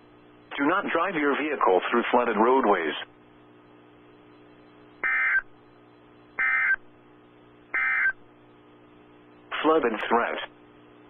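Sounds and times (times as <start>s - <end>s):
faint steady hum: 0.0s - 11.0s
digital data tones: 5.0s - 5.5s, 6.4s - 6.8s, 7.8s - 8.2s.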